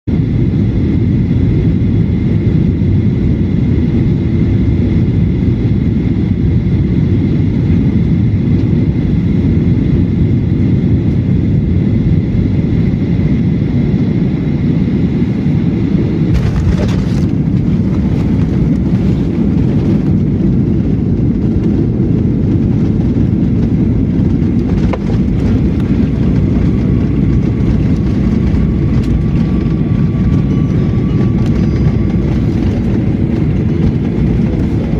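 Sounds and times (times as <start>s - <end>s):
airliner engine and airflow rumble: 0.0s - 34.9s
faint whine: 0.1s - 34.9s
wheels striking runway: 16.3s - 20.2s, 22.8s - 34.9s.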